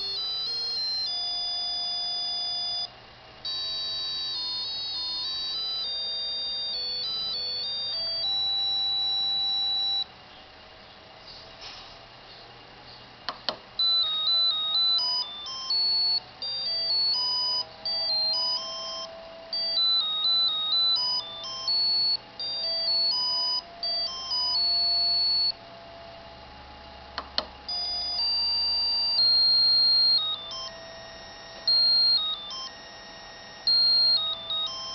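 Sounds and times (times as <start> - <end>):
square-wave beeping ringtone melody: 0.0 - 10.1, 13.5 - 25.6, 27.2 - 34.9
clicks: 13.3 - 13.7, 27.2 - 27.8.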